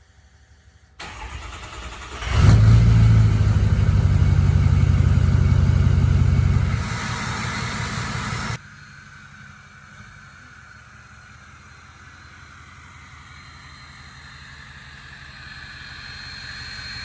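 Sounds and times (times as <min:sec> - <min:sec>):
diesel engine running loud: 0:01.0 - 0:17.0
high hiss: 0:06.7 - 0:08.6.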